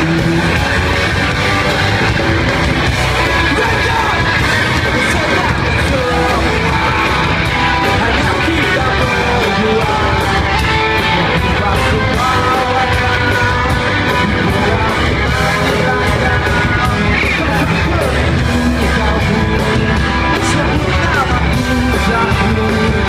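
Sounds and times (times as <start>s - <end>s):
live rock band playing: 0.0s - 23.0s
person singing: 3.0s - 23.0s.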